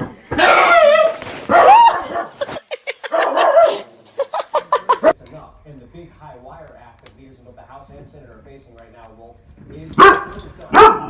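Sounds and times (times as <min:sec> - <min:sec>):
dog barking: 0:00.3 - 0:02.4, 0:03.1 - 0:03.9, 0:10.0 - 0:11.0.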